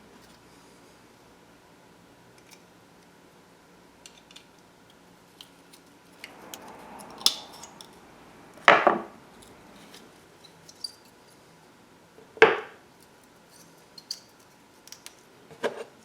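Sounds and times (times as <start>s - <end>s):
metal scrape: 6.2s - 11.1s
metal parts clicking and clinking: 13.0s - 15.2s.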